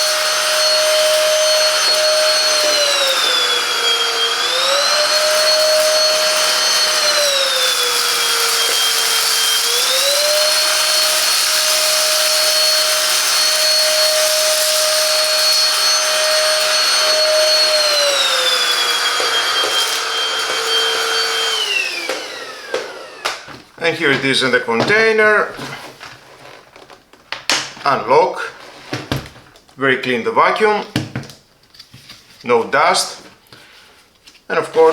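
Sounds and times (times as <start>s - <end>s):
handheld vacuum cleaner whine: 0.0s - 23.7s.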